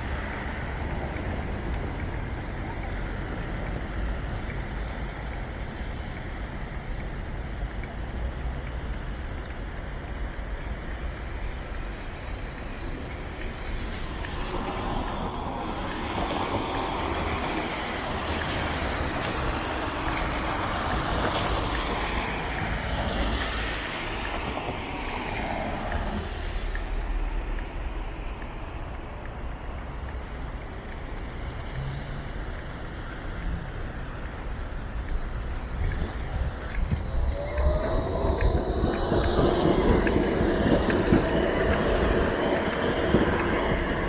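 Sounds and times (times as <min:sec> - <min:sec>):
underground train rumbling: 0:00.0 - 0:44.0
station rumble: 0:32.3 - 0:44.0.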